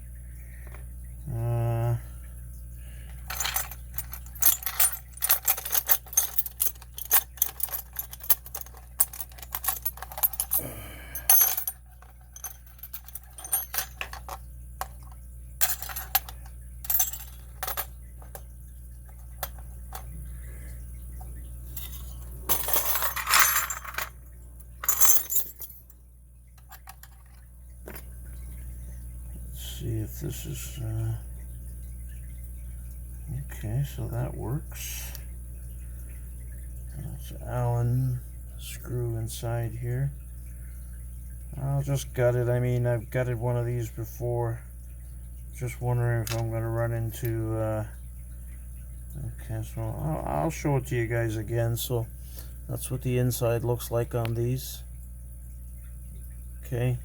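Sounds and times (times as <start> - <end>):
metal scraping rattle: 3.2 - 10.6.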